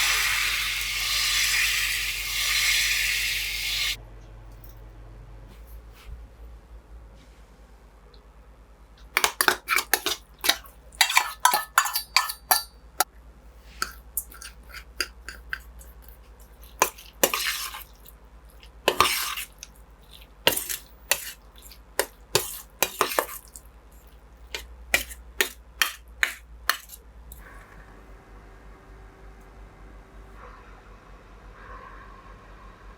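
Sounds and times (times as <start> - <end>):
dishes and cutlery clinking: 9.2 - 12.8, 24.5 - 27.4.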